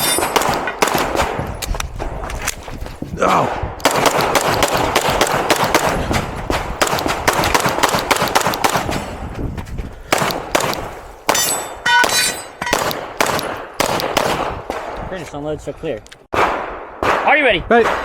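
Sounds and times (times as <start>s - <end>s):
pistol shots echoing: 0.0s - 1.4s, 3.8s - 9.1s, 10.1s - 15.0s, 16.3s - 18.0s
metallic ringing: 11.3s - 12.8s.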